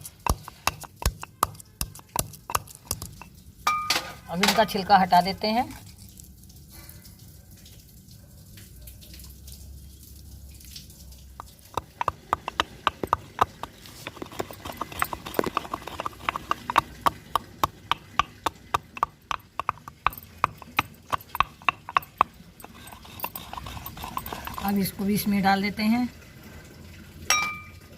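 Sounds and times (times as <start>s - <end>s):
pestle pounding in mortar: 0.0s - 3.3s, 11.4s - 25.0s.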